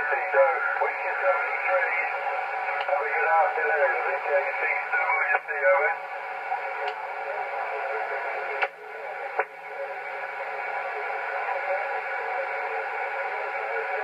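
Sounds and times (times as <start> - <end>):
radio static hiss: 0.0 - 14.0
sharp radio clicks: 2.7 - 3.1, 5.2 - 5.6, 8.5 - 9.6.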